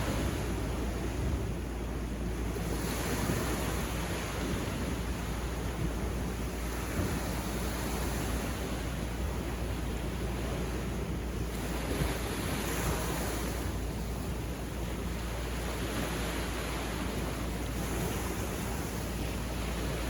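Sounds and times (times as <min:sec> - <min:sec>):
sea waves breaking: 0:00.0 - 0:20.0
wind rumble on microphone: 0:00.0 - 0:20.0.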